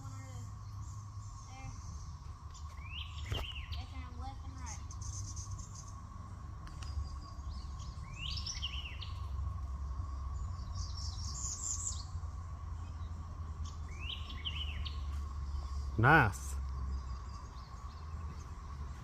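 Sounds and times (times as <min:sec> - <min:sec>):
birds chirping: 0:00.0 - 0:19.0
faint steady hum: 0:00.0 - 0:19.0.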